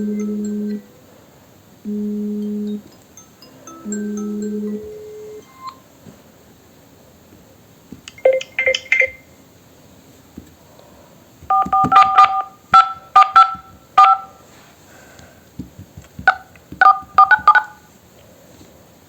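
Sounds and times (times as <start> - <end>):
phone keypad tones: 8.1 - 9.3, 11.5 - 14.4, 16.3 - 17.8.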